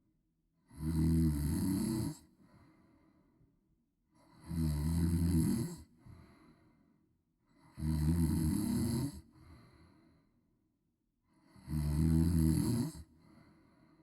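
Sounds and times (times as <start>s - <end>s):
woman snoring loudly: 0.7s - 2.2s, 4.4s - 5.8s, 7.7s - 9.2s, 11.5s - 13.0s.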